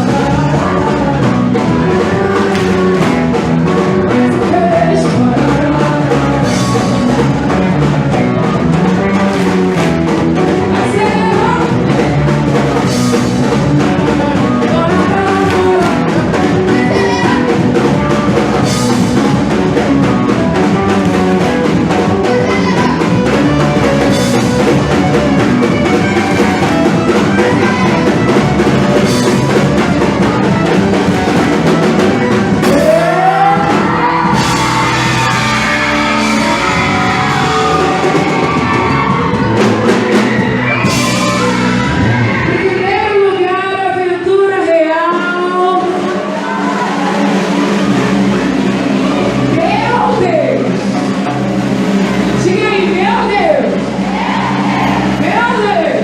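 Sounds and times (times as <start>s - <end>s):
person singing: 0.0s - 3.0s, 3.7s - 7.6s, 10.5s - 13.0s, 13.8s - 17.7s, 32.6s - 39.1s
drum kit beat: 0.0s - 43.8s, 45.3s - 56.0s.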